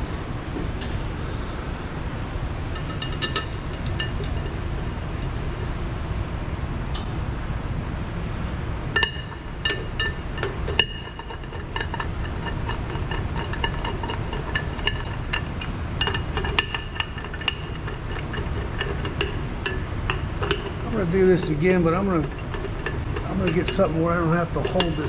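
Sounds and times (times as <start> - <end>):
steady low rumble: 0.0 - 25.0
hand tools clinking on metal: 9.0 - 25.0.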